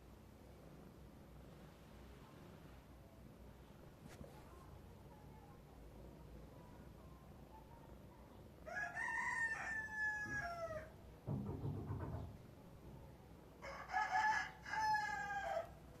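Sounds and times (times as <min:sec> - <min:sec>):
rooster crowing: 0:08.6 - 0:11.0, 0:13.6 - 0:15.8.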